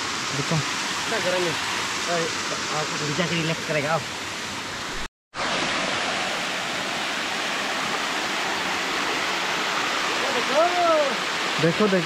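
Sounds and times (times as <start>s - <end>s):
small waterfall rushing: 0.0s - 12.0s.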